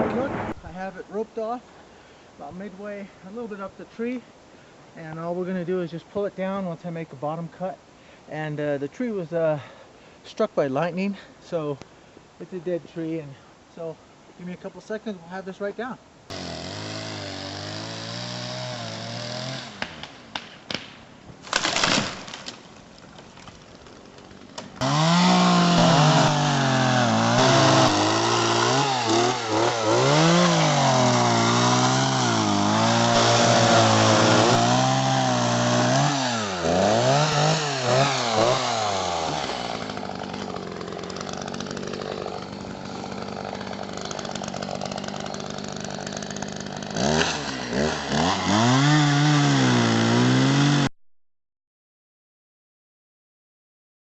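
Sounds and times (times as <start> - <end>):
chainsaw idling: 16.3 - 20.0, 24.8 - 50.9
chainsaw cutting wood: 16.3 - 50.9.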